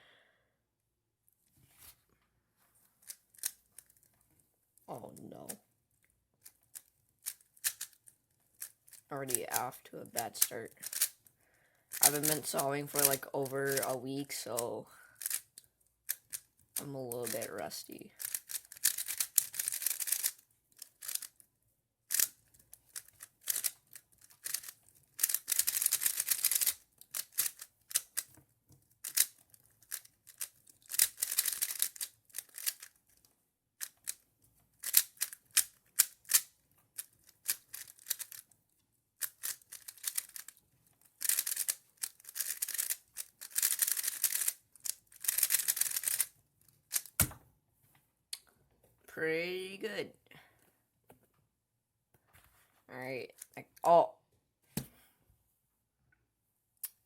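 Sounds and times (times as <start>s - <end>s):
puzzle cube plastic clicking: 3.0s - 4.1s, 6.4s - 11.2s, 11.9s - 14.4s, 15.2s - 17.6s, 18.2s - 21.5s, 22.1s - 33.2s, 33.8s - 34.2s, 34.8s - 38.5s, 39.2s - 47.4s.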